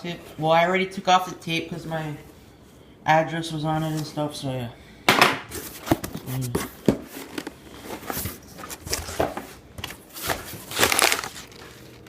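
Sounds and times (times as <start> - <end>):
cardboard and paper rustling: 5.5 - 12.0.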